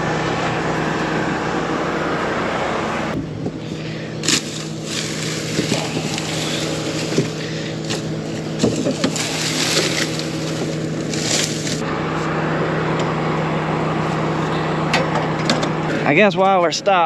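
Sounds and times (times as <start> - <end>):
combine harvester engine hum: 0.0 - 17.0
machinery rushing and rattling: 2.4 - 11.9.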